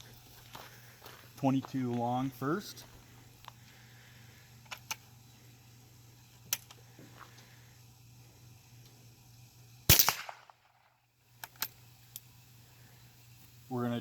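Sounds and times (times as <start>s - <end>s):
rifle shot: 9.9s - 10.9s.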